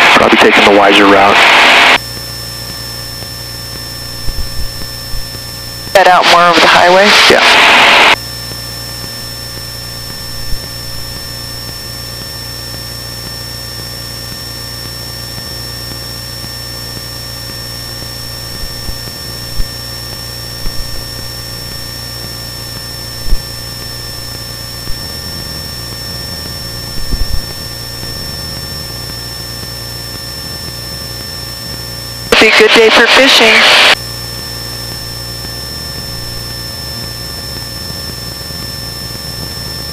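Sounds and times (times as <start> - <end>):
airplane engine droning: 2.8 - 8.2, 8.9 - 12.8, 17.2 - 29.2, 32.3 - 34.0, 35.0 - 39.9.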